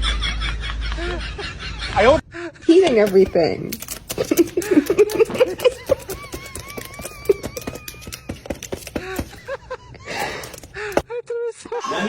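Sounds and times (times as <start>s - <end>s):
parrot clicking: 3.0s - 11.1s.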